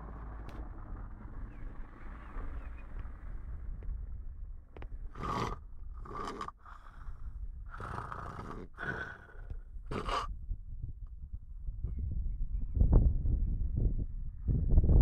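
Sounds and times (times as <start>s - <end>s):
steady low rumble: 0.0s - 15.0s
person snoring: 5.2s - 10.3s.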